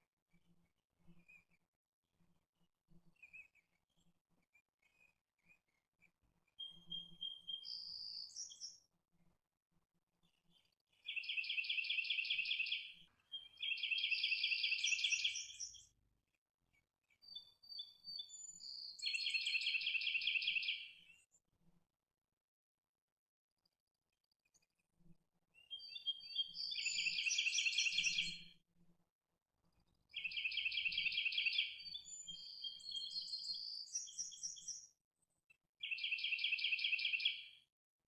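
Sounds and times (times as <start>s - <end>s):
songbird singing repeated notes: 6.6s - 8.8s, 11.1s - 15.9s, 17.2s - 21.1s, 25.6s - 28.5s, 30.1s - 34.9s, 35.8s - 37.6s.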